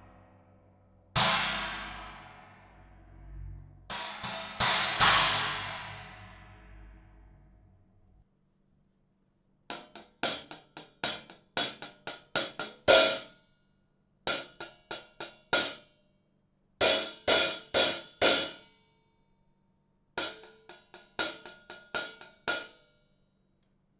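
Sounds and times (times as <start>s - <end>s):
cymbals struck: 3.9s - 6.6s, 12.4s - 13.2s, 16.8s - 18.7s.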